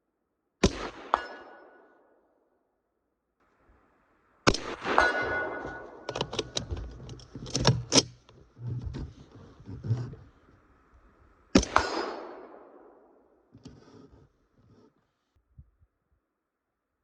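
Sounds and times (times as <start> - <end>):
suppressed rifle shot: 0.6 - 1.6, 4.5 - 6.4, 11.6 - 13.1
steel target ringing: 4.8 - 6.1
sharp clicks and knocks: 5.5 - 10.2.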